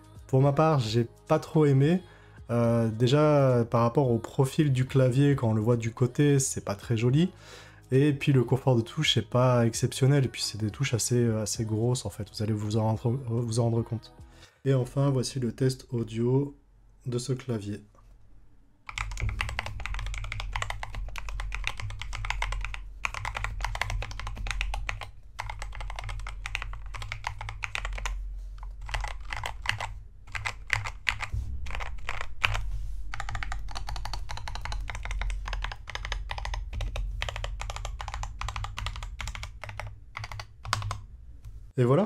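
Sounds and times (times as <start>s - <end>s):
mechanical keyboard typing: 18.9s - 41.1s
low rumble: 31.2s - 34.6s.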